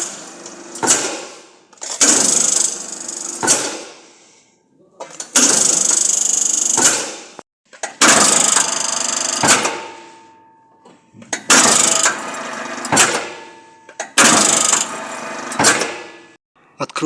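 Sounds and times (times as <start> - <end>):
switch-off knock: 11.2 - 16.2
motor grinding scrape: 11.4 - 16.4
motor spinning down: 14.3 - 16.1.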